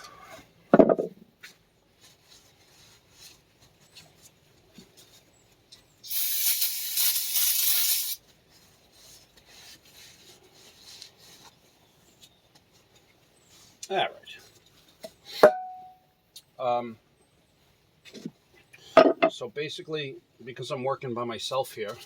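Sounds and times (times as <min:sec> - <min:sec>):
spray hiss: 0:06.1 - 0:08.2
light scraping and rubbing: 0:08.5 - 0:13.8.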